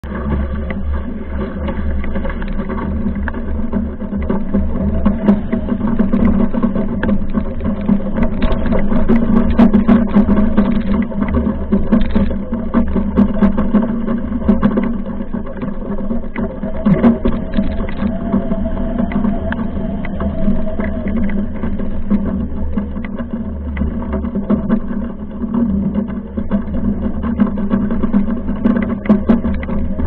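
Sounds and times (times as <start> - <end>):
steady low hum: 0.0 - 30.0
wind gusting on microphone: 0.2 - 30.0
water rushing past: 13.5 - 25.4.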